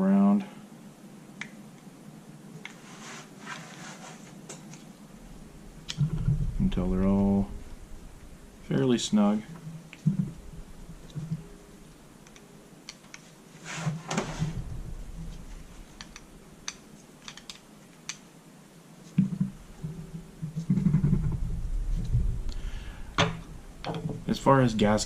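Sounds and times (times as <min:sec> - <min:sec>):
small metal parts clicking: 0:16.0 - 0:18.2.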